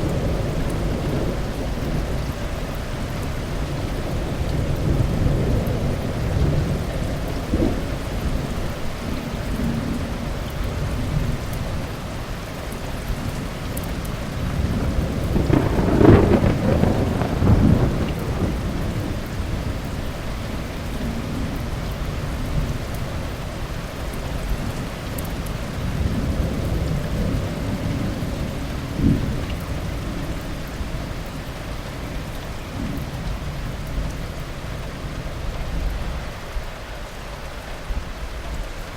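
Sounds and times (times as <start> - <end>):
low rumble of thunder: 0.0 - 12.2, 12.9 - 36.3
heavy rain: 0.0 - 38.9
sharp crack of thunder: 14.6 - 19.8
thunderclap: 14.8 - 19.7.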